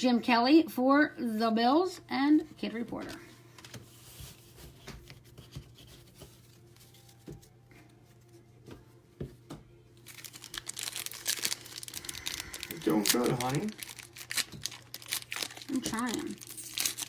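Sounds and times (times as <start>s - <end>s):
card pack wrapper tearing: 10.0s - 17.0s.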